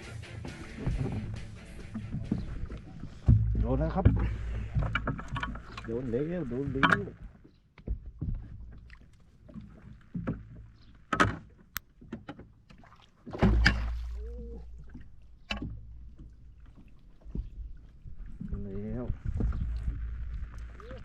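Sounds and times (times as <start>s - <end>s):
knocks and thumps on boat: 0.0s - 21.0s
heavy thump with low rumble: 3.2s - 5.1s.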